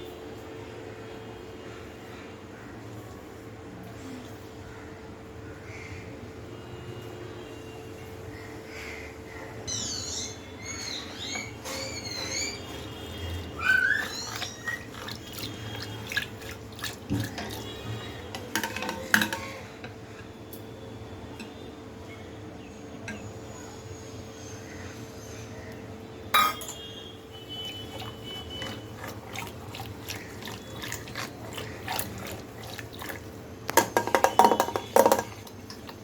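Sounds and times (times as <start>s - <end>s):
birds chirping: 9.7s - 16.0s
sharp knocks and clinks: 26.4s - 26.8s, 33.7s - 35.9s.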